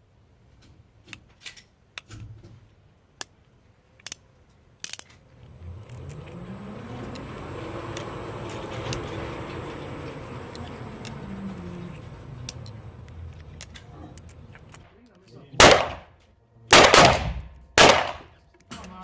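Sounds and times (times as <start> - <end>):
revolver metallic clicks: 4.8 - 14.9, 16.7 - 19.0
hum rising in pitch: 5.3 - 14.5.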